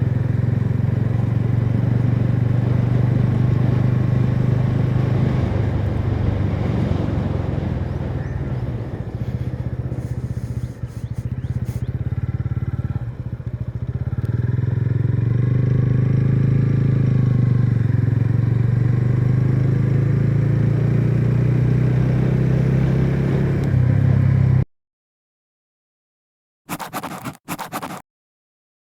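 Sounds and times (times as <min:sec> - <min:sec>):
motorcycle engine running: 0:00.0 - 0:22.3.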